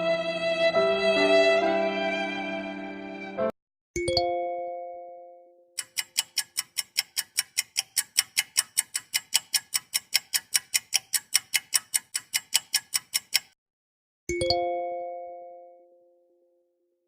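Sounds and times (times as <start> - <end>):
clock ticking: 5.8 - 13.6.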